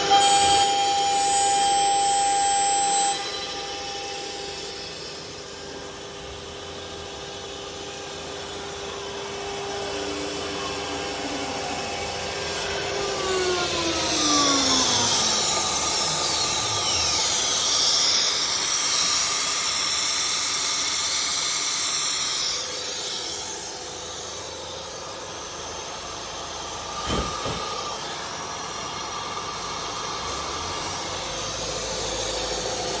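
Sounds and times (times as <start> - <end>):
router spindle whining: 0.0 - 33.0
sharp knock: 27.0 - 27.8.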